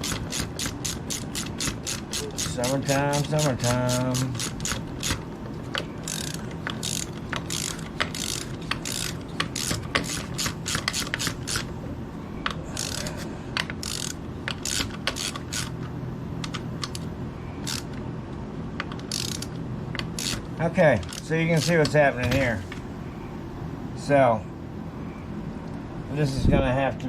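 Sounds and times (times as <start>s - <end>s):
hand ratchet clicking: 0.0s - 11.7s, 12.7s - 17.0s, 17.6s - 18.0s, 18.8s - 22.0s
fan humming: 0.0s - 27.0s.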